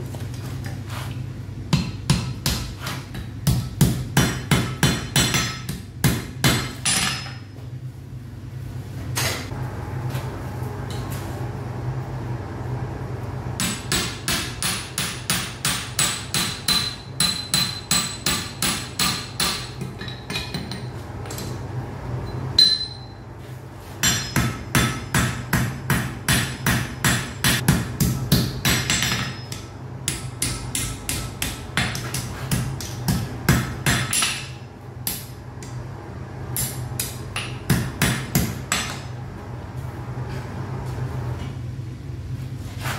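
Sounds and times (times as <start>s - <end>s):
steady low hum: 0.0s - 42.9s
hammer striking iron on anvil: 1.7s - 7.5s, 13.6s - 21.5s, 22.6s - 23.2s, 24.0s - 35.8s, 36.6s - 39.1s.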